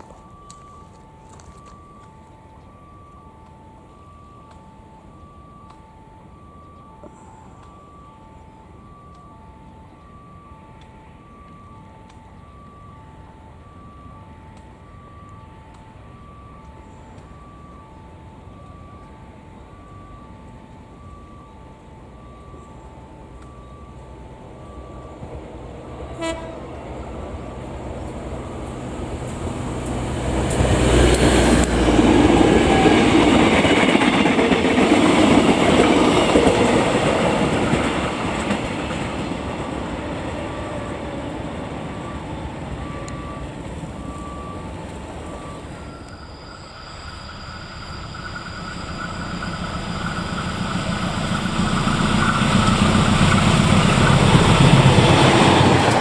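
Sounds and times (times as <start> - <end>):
train wheels clacking on rails: 25.2 - 56.0.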